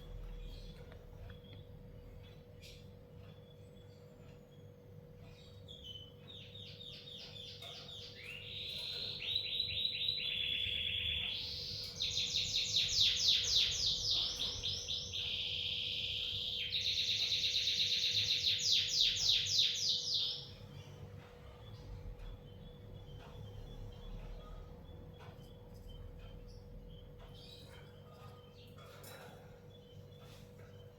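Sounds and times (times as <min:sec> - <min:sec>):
bird singing rapid trills: 0:00.0 - 0:21.0.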